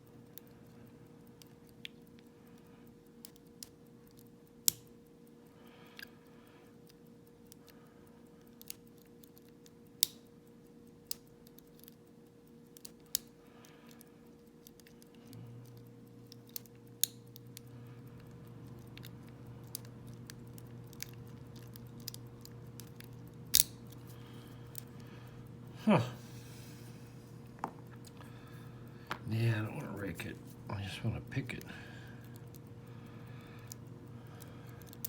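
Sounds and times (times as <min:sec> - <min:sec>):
steady low hum: 0:00.0 - 0:35.0
lock pick clicking in padlock: 0:20.6 - 0:24.0.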